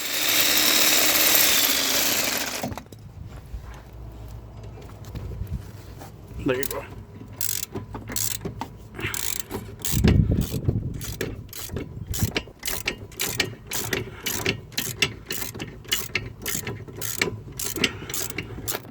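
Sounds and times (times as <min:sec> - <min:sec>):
ratchet wrench clicking: 0:00.0 - 0:02.6, 0:07.4 - 0:18.9.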